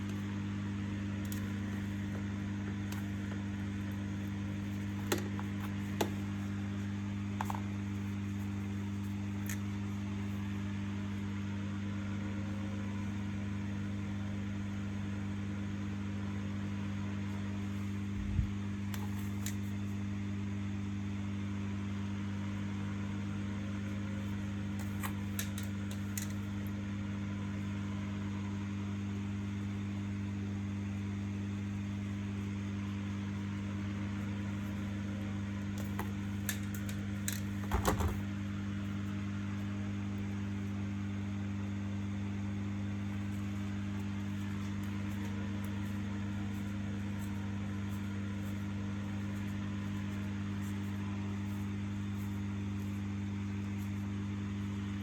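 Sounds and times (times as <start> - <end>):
low electrical hum: 0.0 - 55.0.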